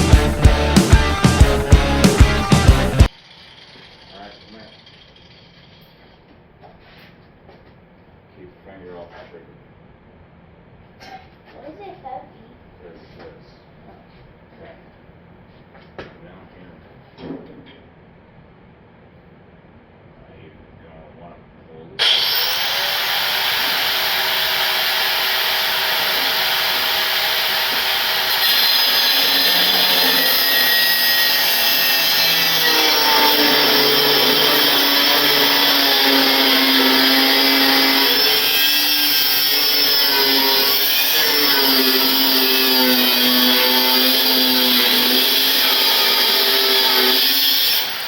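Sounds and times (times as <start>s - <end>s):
power tool cutting metal: 22.0s - 48.0s.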